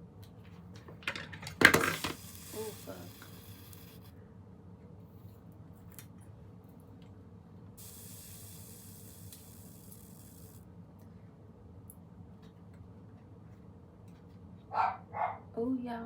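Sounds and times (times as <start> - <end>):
steady low hum: 0.0 - 14.7
aerosol hair spray hissing: 1.8 - 4.1, 7.8 - 10.6.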